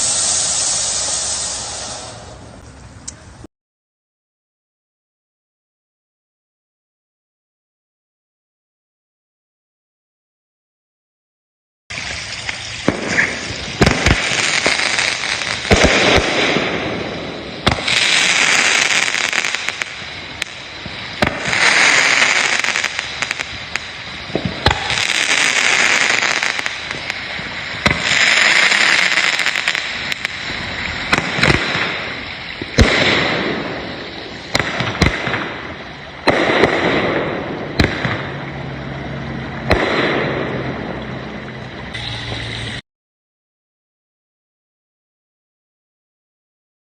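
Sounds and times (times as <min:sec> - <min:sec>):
fireworks bangs: 0:00.0 - 0:02.6, 0:11.9 - 0:42.8
fireworks crackling: 0:00.0 - 0:03.5, 0:11.9 - 0:42.8.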